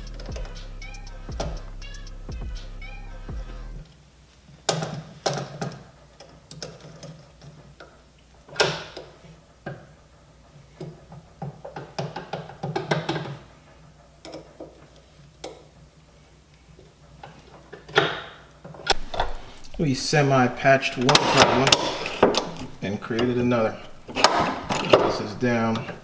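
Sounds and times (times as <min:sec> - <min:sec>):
background music: 0:00.0 - 0:03.9
metal parts and tools clinking: 0:21.0 - 0:26.0.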